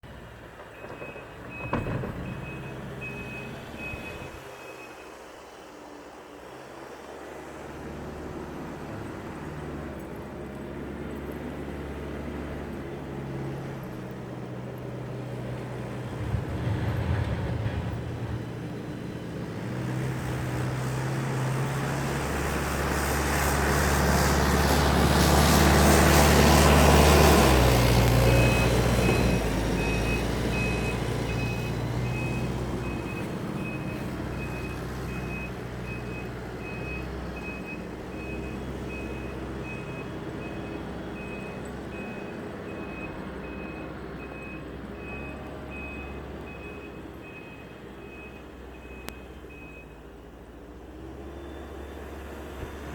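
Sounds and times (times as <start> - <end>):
diesel engine revving: 11.2 - 47.3.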